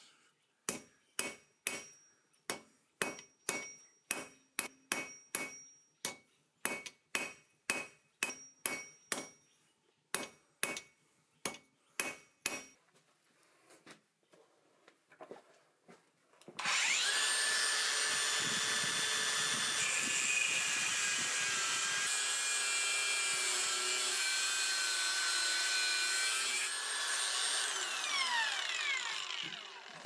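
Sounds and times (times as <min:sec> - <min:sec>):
hammer striking steel on anvil: 0:00.7 - 0:09.4, 0:10.1 - 0:12.8.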